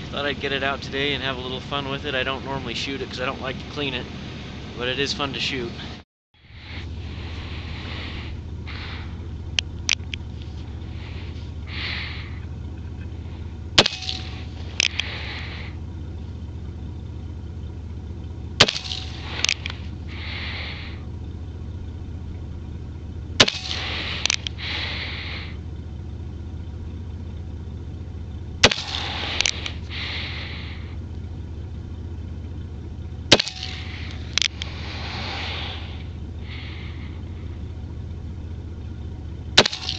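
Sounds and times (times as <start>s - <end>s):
steady low hum: 0.0s - 39.9s
short hiss: 6.6s - 9.2s, 33.7s - 37.2s
revolver shots: 13.7s - 15.6s, 18.6s - 19.9s, 23.3s - 24.6s, 28.5s - 30.0s, 33.2s - 35.3s, 39.6s - 39.9s.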